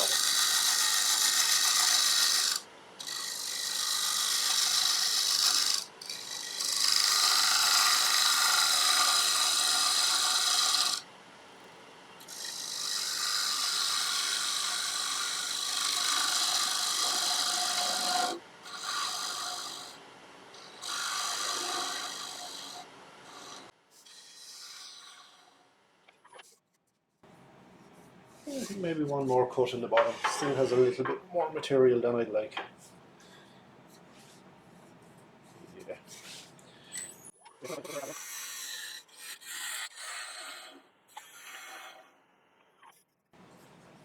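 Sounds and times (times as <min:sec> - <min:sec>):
gouge cutting wood on a lathe: 0:00.0 - 0:11.0, 0:12.3 - 0:20.0, 0:20.6 - 0:25.6, 0:37.6 - 0:40.7.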